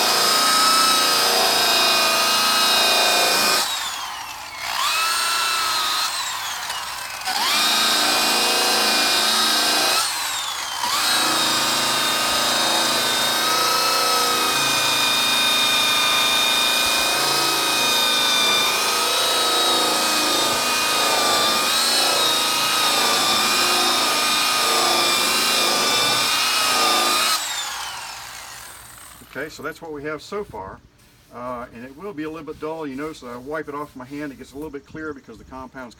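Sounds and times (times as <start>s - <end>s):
buffing tool motor whine: 0.0s - 29.4s.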